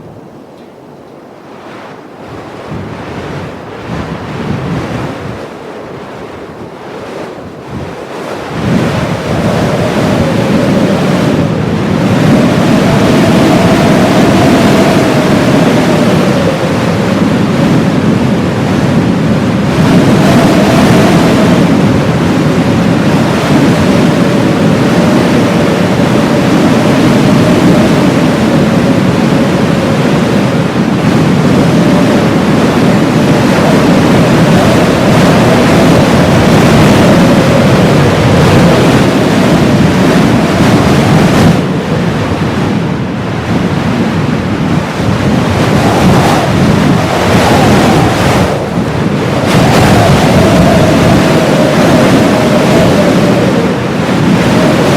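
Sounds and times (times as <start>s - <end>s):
blizzard wind gusting: 0.0s - 54.9s
faint wavering wind whistle: 0.0s - 54.9s.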